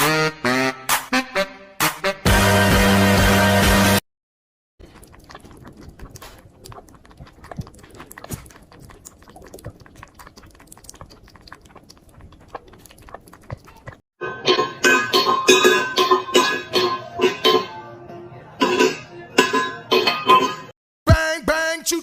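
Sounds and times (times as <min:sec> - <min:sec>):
small animal moving about: 0:04.9 - 0:14.0.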